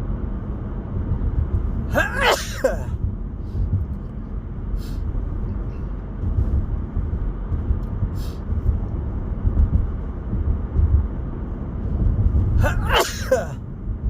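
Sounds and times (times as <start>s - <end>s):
car road and engine rumble: 0.0s - 14.0s.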